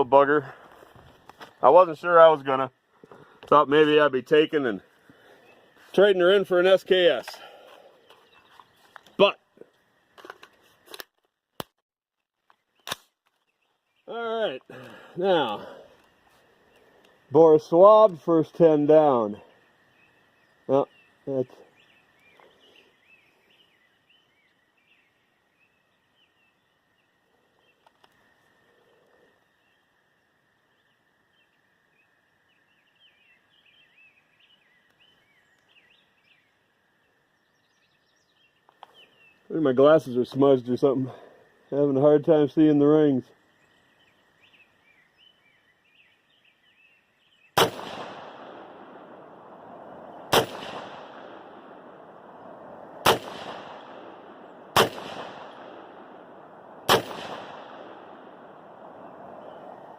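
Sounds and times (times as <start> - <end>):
faint birds chirping: 0.0 - 11.5, 12.2 - 59.9
rifle shots with rolling echo: 47.6 - 59.9.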